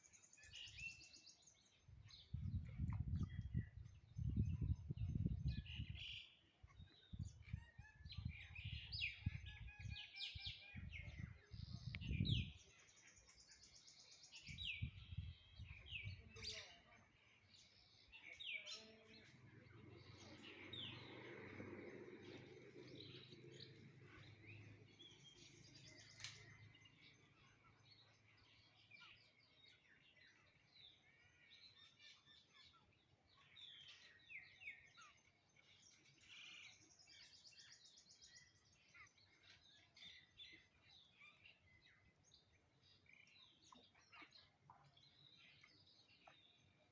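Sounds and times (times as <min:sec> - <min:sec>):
faint birdsong: 0:00.0 - 0:46.9.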